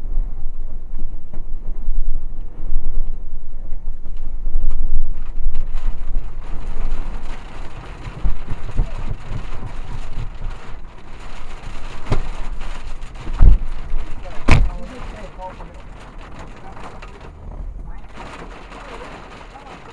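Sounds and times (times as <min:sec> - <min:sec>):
low thumps: 0:00.0 - 0:19.9
rumbling wind: 0:00.0 - 0:19.9
vehicle noise: 0:00.0 - 0:19.9
sharp knock: 0:14.5 - 0:15.0.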